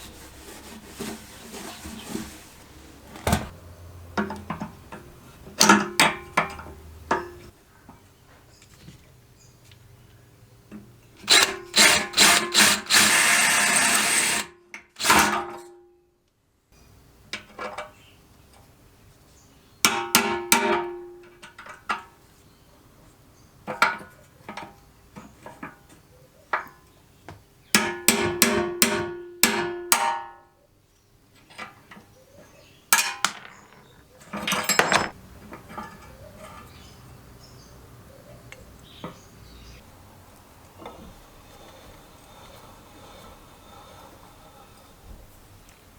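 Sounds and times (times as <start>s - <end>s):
metallic clanks on steel can: 19.9s - 22.1s, 33.0s - 36.6s
harsh rasping hiss: 40.9s - 45.7s.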